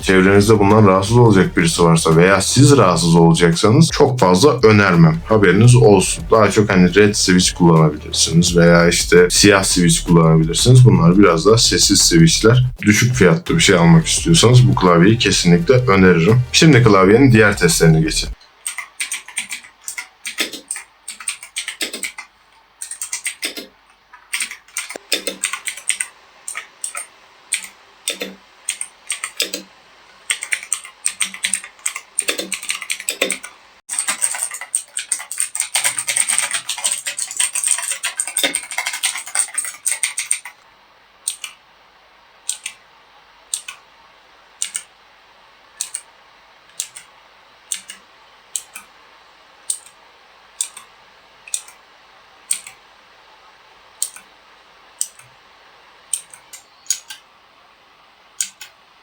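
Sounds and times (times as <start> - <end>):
clicky mechanical keyboard typing: 18.6 - 29.7, 30.3 - 40.6, 41.2 - 41.6, 42.5 - 42.8, 43.5 - 43.8, 44.6 - 44.9, 45.8 - 46.1, 46.7 - 47.1, 47.7 - 48.0, 49.7 - 50.0, 51.5 - 51.8, 52.5 - 52.8, 54.0 - 54.3, 58.4 - 58.8.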